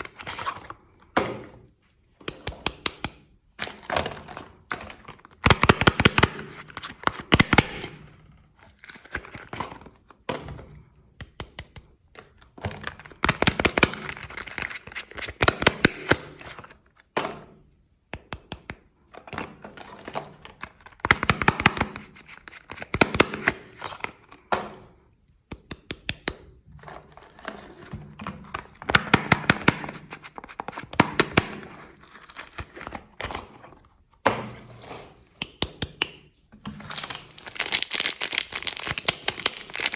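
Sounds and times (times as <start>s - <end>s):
packaging crinkling and tearing: 8.6s - 10.0s, 13.0s - 16.9s, 20.6s - 24.0s, 29.6s - 31.0s, 36.7s - 39.9s.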